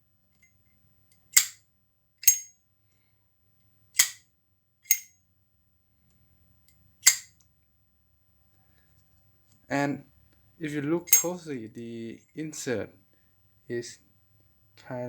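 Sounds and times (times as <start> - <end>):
lighter lid clicking open and shut: 1.4 - 1.6, 2.2 - 2.5, 4.0 - 4.2, 7.0 - 7.3
metallic ringing ping: 2.2 - 2.5, 4.9 - 5.1, 7.1 - 7.3, 11.1 - 11.4.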